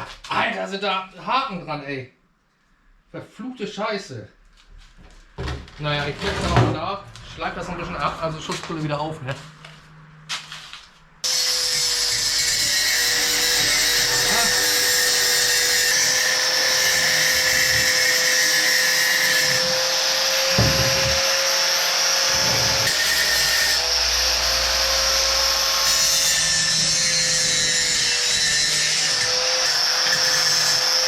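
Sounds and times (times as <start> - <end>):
angle grinder grinding steel: 11.2 - 31.0.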